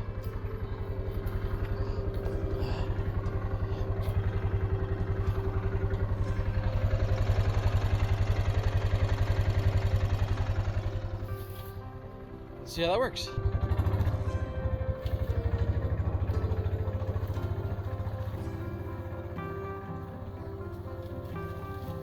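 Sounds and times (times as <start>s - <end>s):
utility vehicle engine running: 0.0s - 22.0s.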